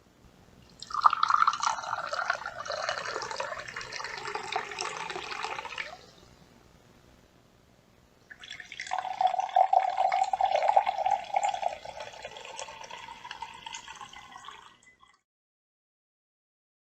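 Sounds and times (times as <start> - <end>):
water pouring into a glass: 0.7 - 6.2, 8.3 - 15.2.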